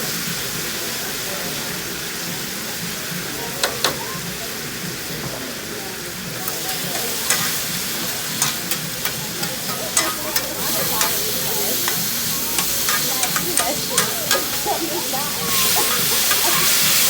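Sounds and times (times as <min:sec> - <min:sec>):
food sizzling on a griddle: 0:00.0 - 0:17.0
metal spatulas tapping and scraping: 0:06.4 - 0:17.0.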